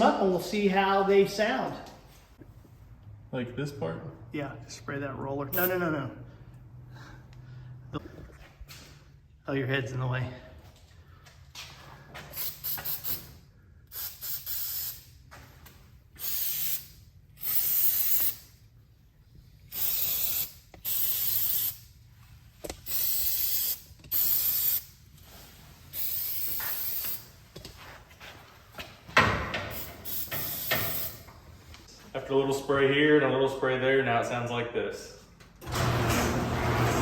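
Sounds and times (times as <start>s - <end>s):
aerosol spray can hissing: 19.7s - 21.8s.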